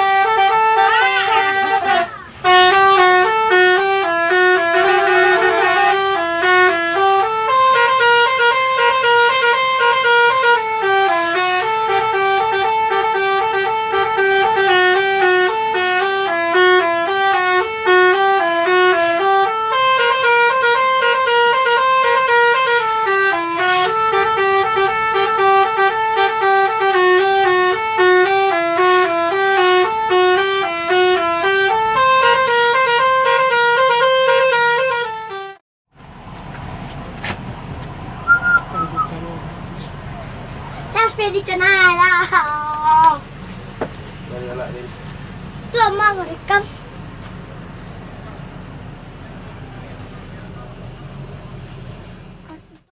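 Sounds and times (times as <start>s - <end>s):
musical horn playing a tune: 0.0s - 35.6s.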